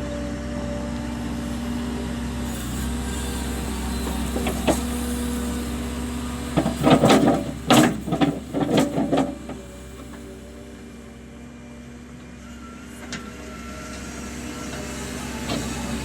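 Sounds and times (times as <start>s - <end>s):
loud rattling and clanking: 6.4s - 10.0s.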